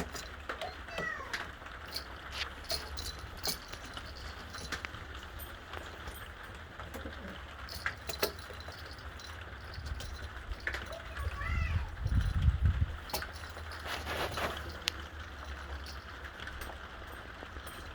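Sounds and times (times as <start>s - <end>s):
low steady rumble: 1.8s - 17.9s.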